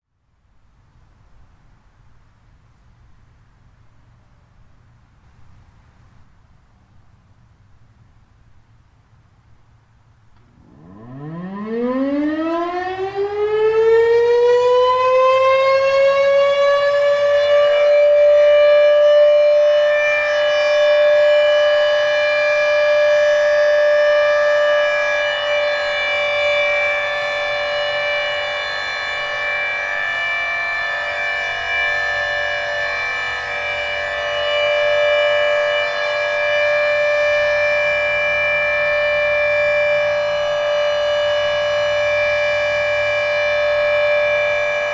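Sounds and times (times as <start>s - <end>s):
warning siren winding up: 10.4s - 44.9s.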